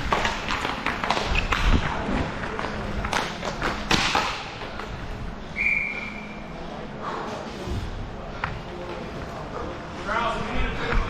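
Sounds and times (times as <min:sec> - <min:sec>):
hockey sticks and puck knocking: 0:00.0 - 0:05.0
referee's whistle: 0:05.6 - 0:06.4.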